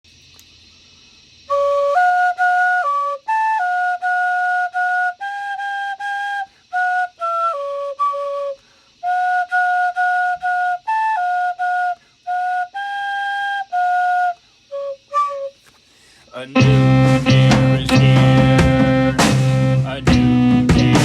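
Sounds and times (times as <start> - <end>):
flute-like melody: 1.5 - 15.6, 16.6 - 21.0.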